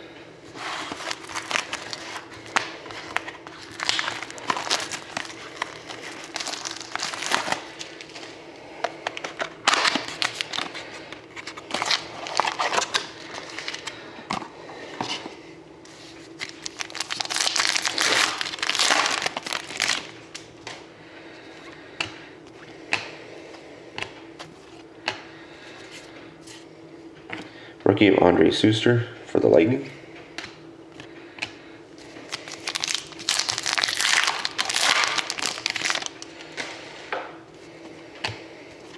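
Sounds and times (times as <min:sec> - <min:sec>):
card pack wrappers crinkling: 0:00.5 - 0:08.3, 0:09.0 - 0:14.0, 0:16.2 - 0:20.5, 0:32.1 - 0:36.4.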